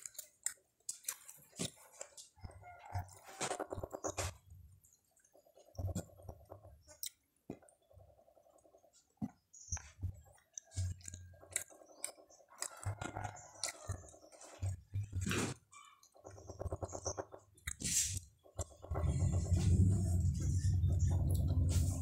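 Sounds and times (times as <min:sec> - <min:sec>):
person chewing food: 0:00.0 - 0:22.0.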